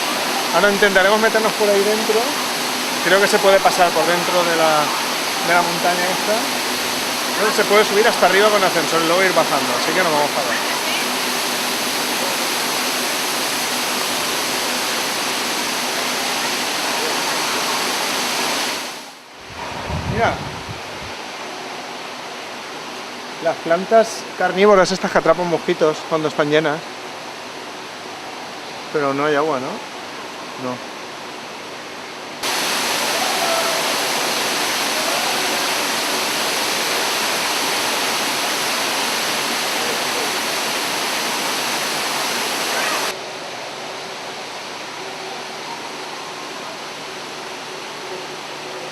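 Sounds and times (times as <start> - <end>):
waterfall rushing: 0.0 - 30.7, 32.4 - 48.9.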